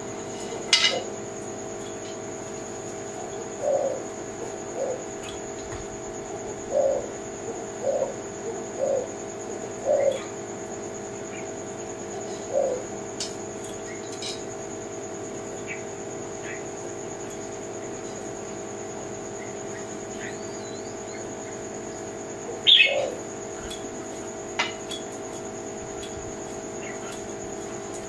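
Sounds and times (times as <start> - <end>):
dove cooing: 0.4 - 2.3, 3.0 - 10.5, 12.2 - 13.0, 19.4 - 24.8.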